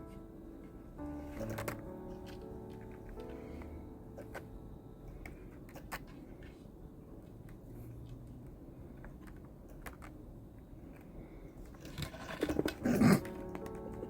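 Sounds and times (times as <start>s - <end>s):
background music: 0.0s - 6.0s, 12.4s - 14.0s.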